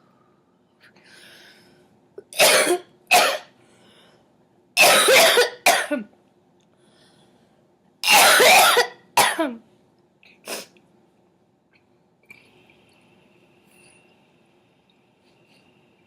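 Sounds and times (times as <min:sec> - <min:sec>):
girl coughing: 0:02.4 - 0:03.5, 0:04.8 - 0:06.1, 0:08.0 - 0:09.6.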